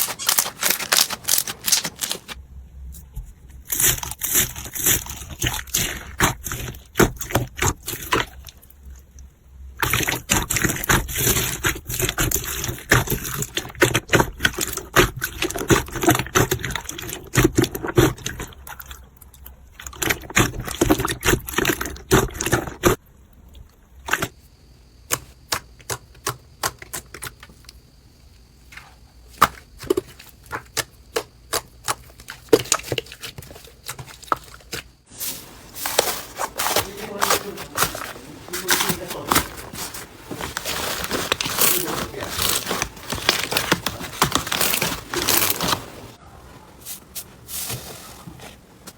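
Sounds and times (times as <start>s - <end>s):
slime crackling and popping: 0.0s - 2.4s, 40.5s - 46.2s.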